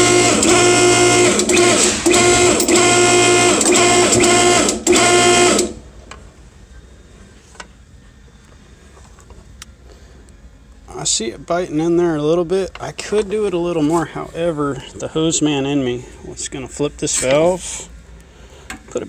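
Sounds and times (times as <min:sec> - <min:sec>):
hydraulic pump running: 0:00.0 - 0:05.9.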